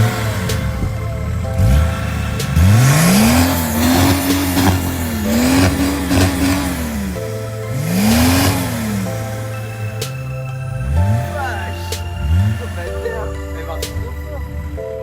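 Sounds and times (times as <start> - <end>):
motorcycle engine revving: 0.0 - 9.6
faint music: 0.0 - 15.0.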